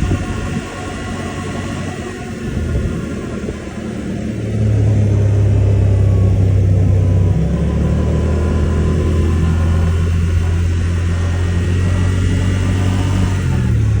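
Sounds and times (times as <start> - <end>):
car engine hum: 0.0 - 14.0
high whirring whine: 0.0 - 14.0.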